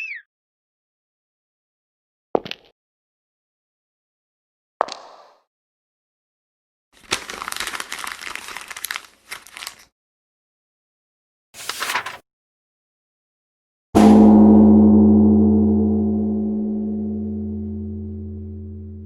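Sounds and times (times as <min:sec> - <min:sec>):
short sharp hit: 0:14.0 - 0:19.0.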